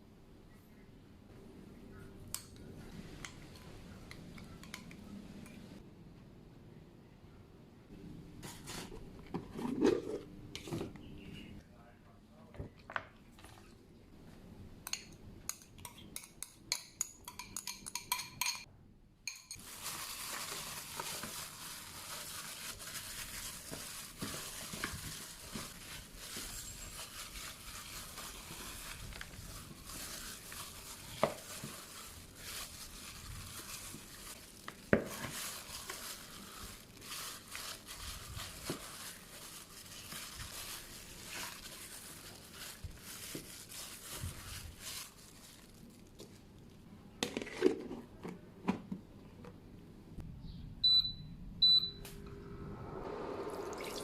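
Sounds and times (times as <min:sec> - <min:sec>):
utensils and dishes clicking: 0:14.9 - 0:18.7.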